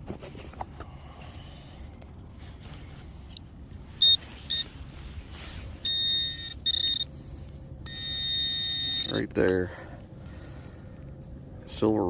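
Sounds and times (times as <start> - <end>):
metal detector beeping tone: 4.0 - 4.7, 5.8 - 7.1, 7.8 - 9.3.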